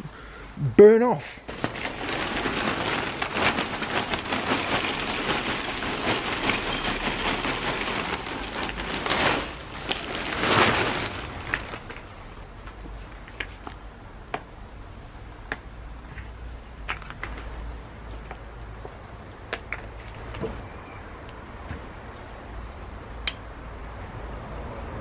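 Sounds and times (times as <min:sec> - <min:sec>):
charcoal lumps clattering: 0:01.5 - 0:13.8.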